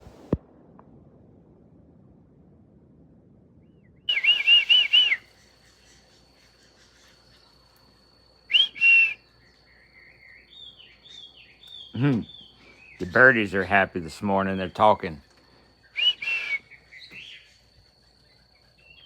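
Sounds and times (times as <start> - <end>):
birds whistling: 4.0 - 13.6, 15.6 - 19.0
faint bird warbling: 4.1 - 13.3, 15.6 - 19.0.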